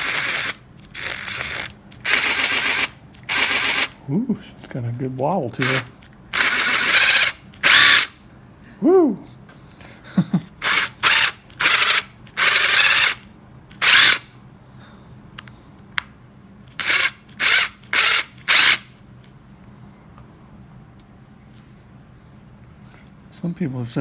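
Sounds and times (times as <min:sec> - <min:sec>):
impact driver motor whirring: 0:00.0 - 0:04.0, 0:05.6 - 0:08.2, 0:10.6 - 0:14.3, 0:16.8 - 0:18.9.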